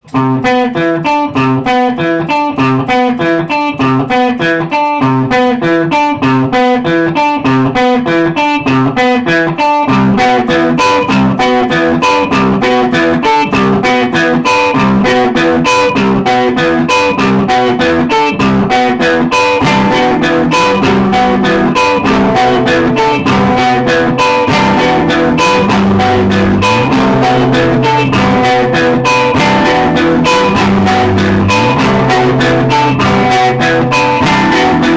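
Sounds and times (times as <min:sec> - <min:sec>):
picked guitar notes: 0:00.0 - 0:34.9
bass line accompaniment: 0:19.6 - 0:34.9.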